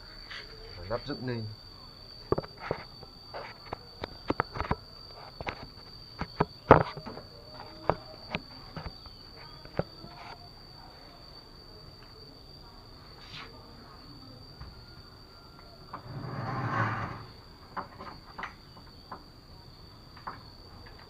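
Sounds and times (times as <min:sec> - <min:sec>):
high-pitched insect drone: 0:00.0 - 0:21.0.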